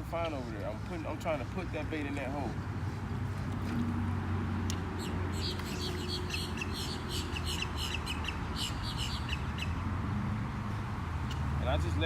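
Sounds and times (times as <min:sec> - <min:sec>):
bird calling in high notes: 0:05.0 - 0:09.7.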